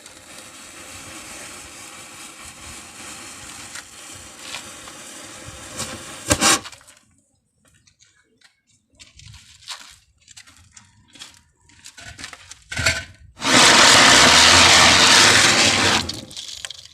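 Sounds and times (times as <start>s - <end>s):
firecracker cracks: 0.0s - 5.1s, 13.4s - 16.7s
loud steady hiss: 0.0s - 6.6s, 13.4s - 16.3s.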